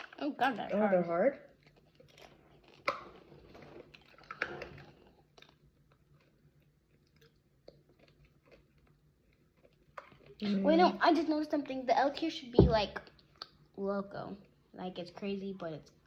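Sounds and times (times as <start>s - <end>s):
person crunching hard candies: 1.5s - 10.4s.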